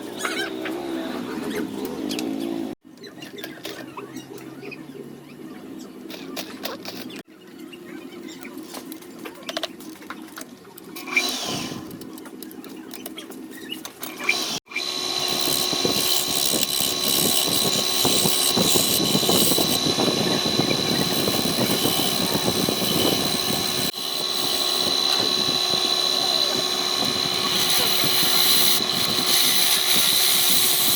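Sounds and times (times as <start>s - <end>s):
tool scraping spinning wood: 14.0s - 30.9s
wood lathe motor whine: 14.3s - 30.9s.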